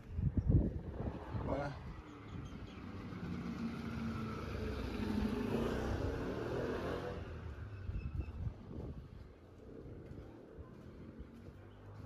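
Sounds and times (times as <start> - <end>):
vehicle driving past: 0.8 - 8.9.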